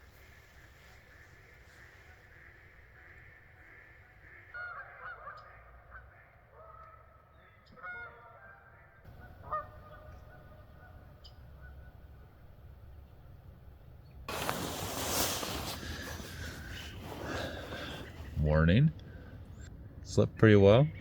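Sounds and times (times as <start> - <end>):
honking bird calls: 0.0 - 13.2, 14.3 - 18.4
low outdoor background: 0.0 - 21.0.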